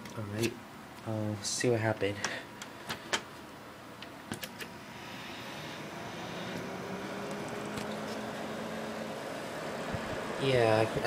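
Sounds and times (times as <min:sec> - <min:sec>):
computer fans whirring: 0:00.0 - 0:11.0.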